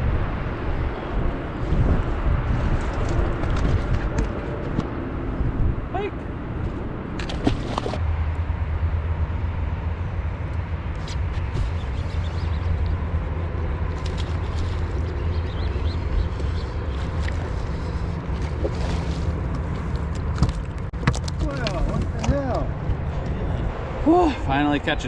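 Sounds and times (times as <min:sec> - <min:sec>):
boat motor running: 0:07.2 - 0:23.5.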